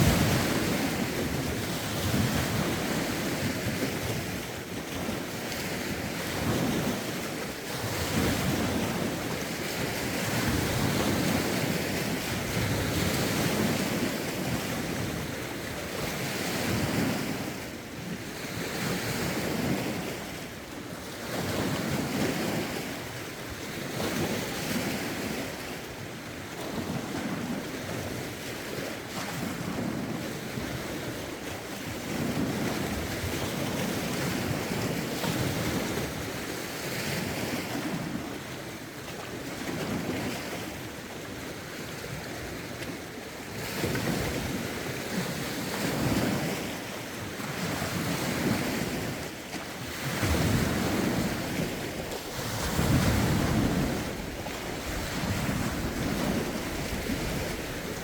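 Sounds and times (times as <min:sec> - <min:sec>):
wind buffeting microphone: 0:00.0 - 0:20.5, 0:47.4 - 0:58.0
lake waves washing in: 0:00.0 - 0:58.0.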